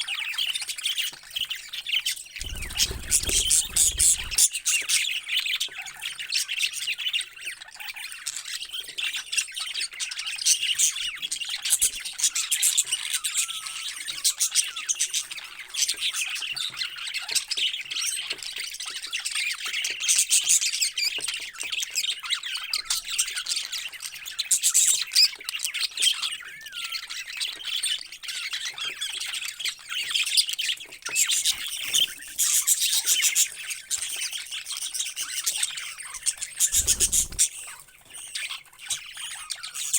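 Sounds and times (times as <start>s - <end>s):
parrots chattering and squawking: 2.4s - 4.6s, 31.2s - 39.9s.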